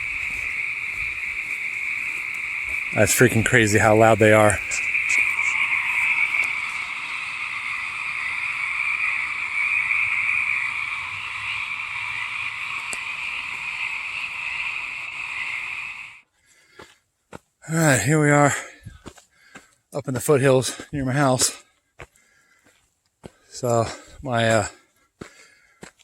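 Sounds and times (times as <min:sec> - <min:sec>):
chorus of frogs calling: 0:00.0 - 0:16.2.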